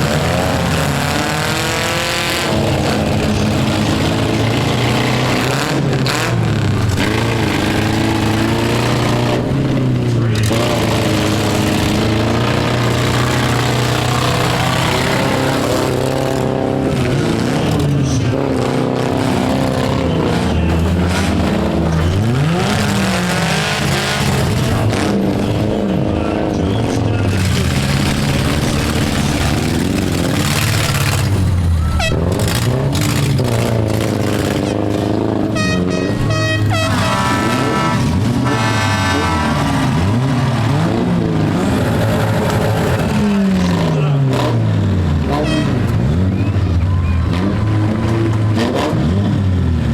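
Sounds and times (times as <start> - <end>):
car engines revving: 0.0 - 49.9
long horn blast: 31.8 - 32.4, 35.5 - 40.2, 45.3 - 45.9
car horn toots: 31.8 - 32.5, 35.5 - 40.2, 45.3 - 46.0.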